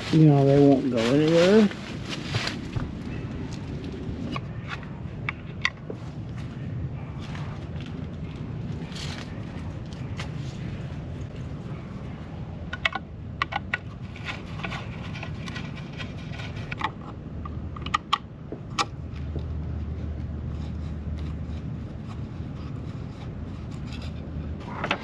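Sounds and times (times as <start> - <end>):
steady low hum: 0.0 - 25.0
low drone: 0.8 - 17.8.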